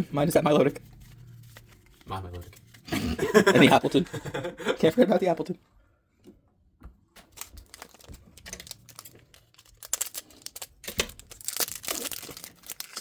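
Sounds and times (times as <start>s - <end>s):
foil wrapper crinkling and ripping: 7.3s - 13.0s.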